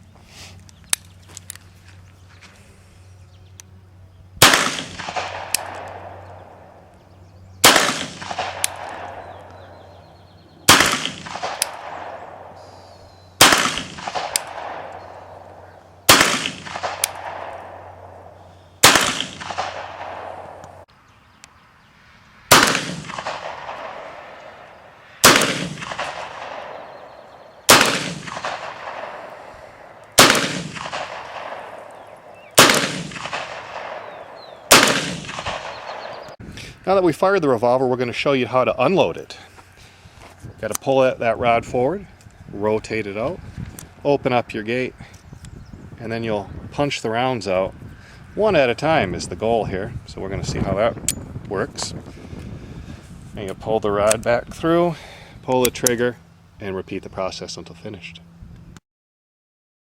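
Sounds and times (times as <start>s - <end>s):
revolver shots with echo: 4.4s - 6.4s, 7.6s - 10.0s, 10.7s - 12.6s, 13.4s - 20.8s, 22.5s - 29.6s, 30.2s - 36.3s.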